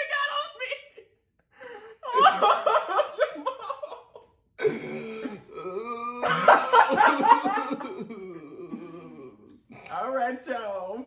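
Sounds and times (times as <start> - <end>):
person coughing: 4.6 - 9.3.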